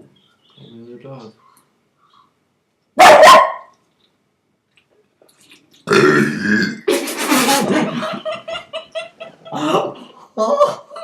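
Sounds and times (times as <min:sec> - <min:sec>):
person burping: 0:05.8 - 0:06.9.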